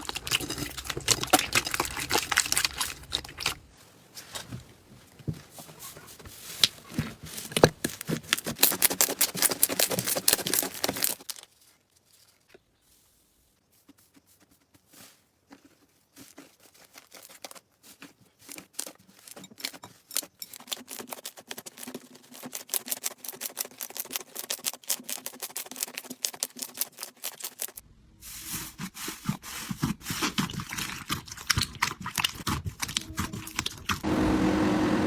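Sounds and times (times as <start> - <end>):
slime crackling and popping: 0.0 - 3.6.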